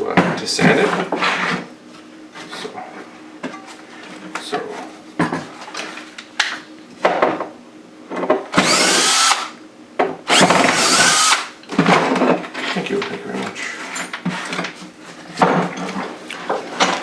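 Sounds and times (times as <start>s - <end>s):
power drill whining: 8.6s - 9.6s, 10.3s - 11.5s.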